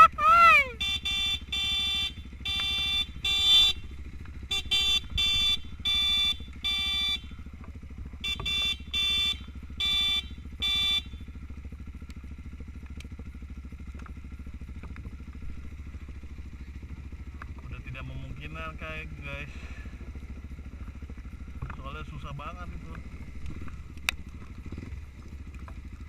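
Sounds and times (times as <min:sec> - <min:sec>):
motorcycle engine idling: 0:00.0 - 0:26.0
vehicle horn short beeps: 0:00.8 - 0:07.4, 0:08.2 - 0:11.3.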